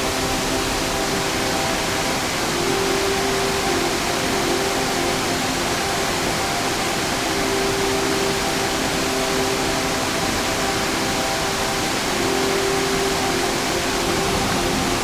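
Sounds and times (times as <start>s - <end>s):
stream rushing over rocks: 9.2s - 15.0s.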